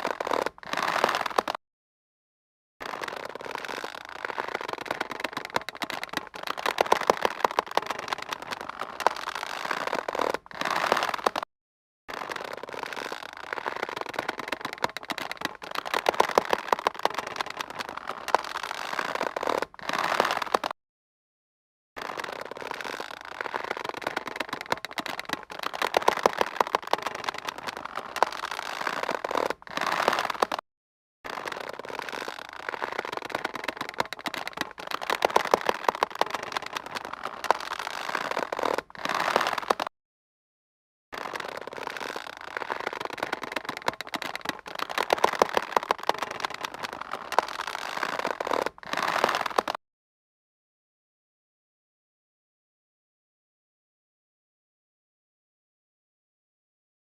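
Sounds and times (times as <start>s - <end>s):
taut rope creaking: 0.0s - 1.6s, 2.8s - 11.5s, 12.1s - 20.8s, 22.0s - 30.6s, 31.3s - 39.9s, 41.2s - 49.8s.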